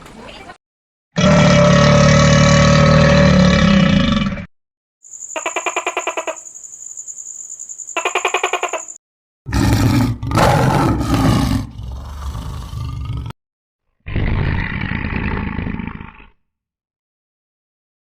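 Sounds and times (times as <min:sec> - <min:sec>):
rough animal roar: 0:01.2 - 0:04.5, 0:09.5 - 0:13.4, 0:14.0 - 0:16.4
fast-pulsing buzzy call: 0:05.1 - 0:06.5, 0:08.0 - 0:09.0.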